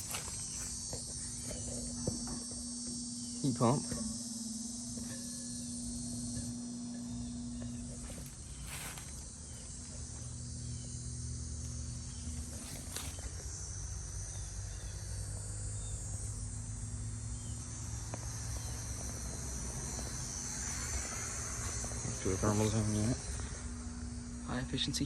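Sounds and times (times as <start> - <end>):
insects buzzing: 0.0 - 25.0
low steady hum: 0.0 - 25.0.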